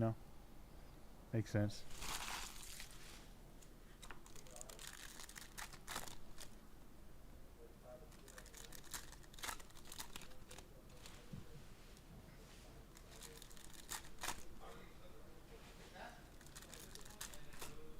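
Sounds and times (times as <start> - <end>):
packaging crinkling and tearing: 1.9 - 3.0, 4.0 - 6.6, 8.1 - 11.1, 13.0 - 14.5, 16.3 - 17.8.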